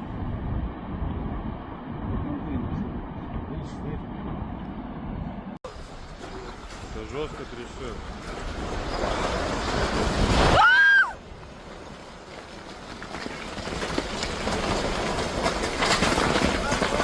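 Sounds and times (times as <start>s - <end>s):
loud rushing rumbling noise: 0.0s - 10.6s.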